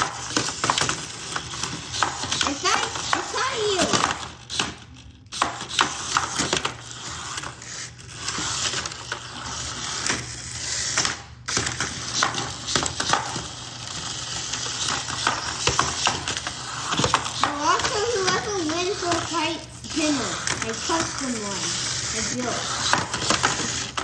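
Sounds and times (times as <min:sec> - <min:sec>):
toy robots clattering: 0:00.0 - 0:08.7, 0:11.7 - 0:24.0.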